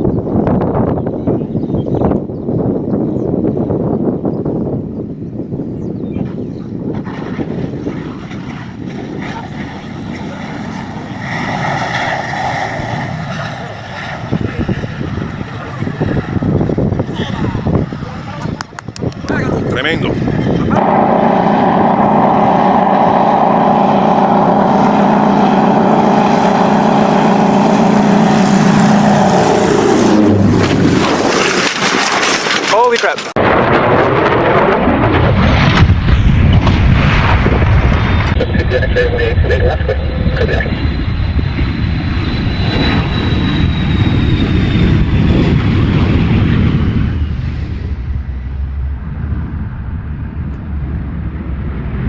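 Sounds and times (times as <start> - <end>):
aircraft engine droning: 0.0 - 52.0
high whine falling in pitch: 20.4 - 31.7, 33.4 - 52.0.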